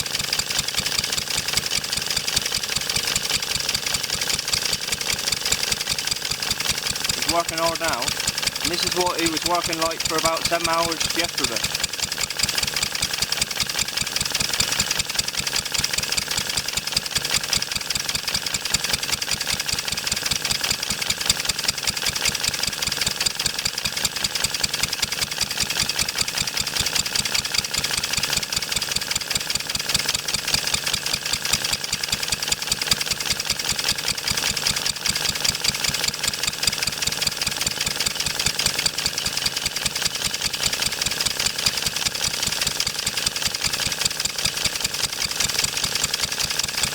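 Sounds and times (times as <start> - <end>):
stationary engine running under load: 5.1 - 11.9.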